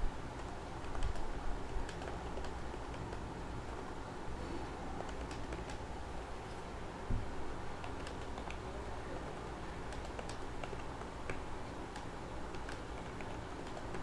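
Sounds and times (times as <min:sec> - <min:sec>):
keyboard typing: 0:00.4 - 0:03.3, 0:05.0 - 0:05.9, 0:07.8 - 0:08.7, 0:09.9 - 0:14.0.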